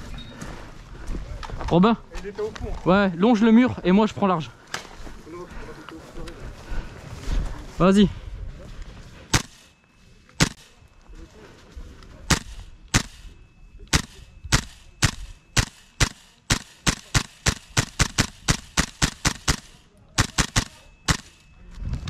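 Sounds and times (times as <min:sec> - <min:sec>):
airsoft rifle firing shots: 0:09.3 - 0:09.7, 0:10.4 - 0:10.8, 0:12.3 - 0:21.4.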